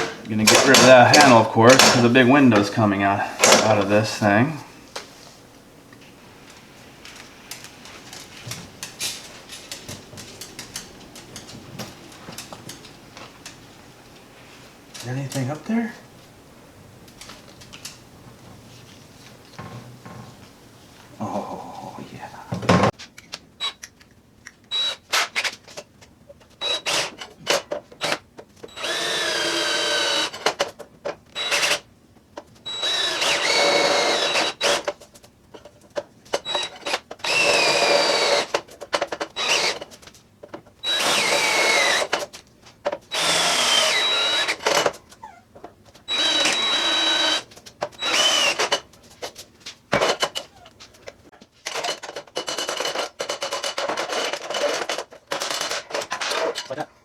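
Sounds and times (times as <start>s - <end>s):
electric drill drilling into steel: 0.0s - 2.2s, 26.6s - 30.6s, 31.4s - 31.9s, 32.7s - 34.9s, 36.5s - 38.6s, 39.4s - 39.9s, 40.8s - 42.3s, 43.1s - 44.9s, 46.1s - 48.8s, 51.7s - 55.8s
drill bit squealing on metal: 43.2s - 44.6s, 46.1s - 47.4s, 48.0s - 48.7s.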